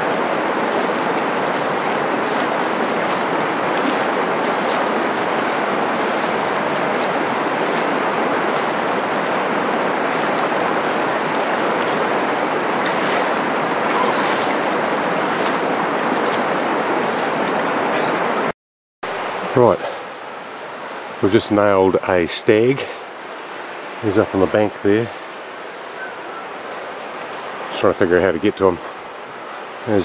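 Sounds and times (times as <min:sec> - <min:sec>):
stream rushing over stones: 0:00.0 - 0:18.5.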